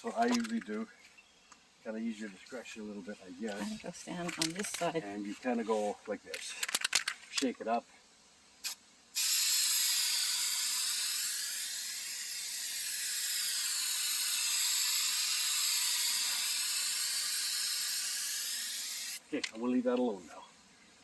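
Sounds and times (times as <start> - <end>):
aerosol can spraying: 8.6 - 19.2.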